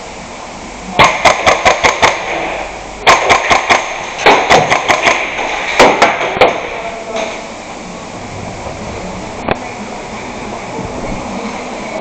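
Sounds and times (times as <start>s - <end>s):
airsoft rifle firing: 1.0s - 6.8s.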